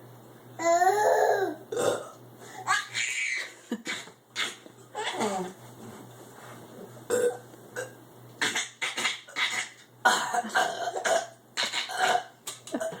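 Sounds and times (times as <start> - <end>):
person making cough-like bursts: 8.4 - 13.0.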